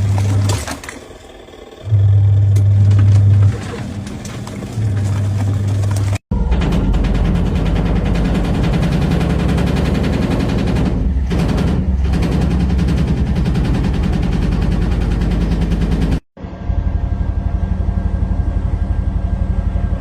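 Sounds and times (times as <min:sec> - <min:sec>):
machine humming: 0:00.0 - 0:20.0
rapid mechanical rattling: 0:02.8 - 0:16.2.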